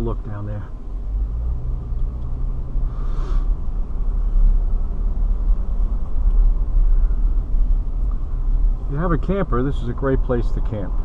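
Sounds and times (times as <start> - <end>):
car engine and tyres rumbling: 0.0 - 11.0
brief hiss: 2.9 - 3.6.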